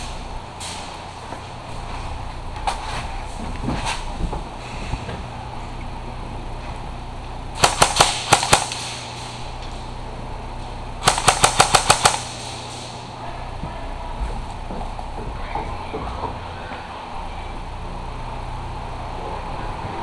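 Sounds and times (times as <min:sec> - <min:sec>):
airsoft gun shots: 0:07.6 - 0:09.4, 0:11.0 - 0:13.0.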